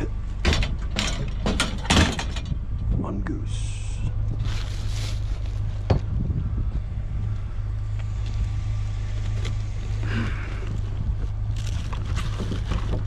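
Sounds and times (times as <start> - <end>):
vehicle engine idling: 0.0 - 13.0
light knocks and rattles: 0.4 - 2.7.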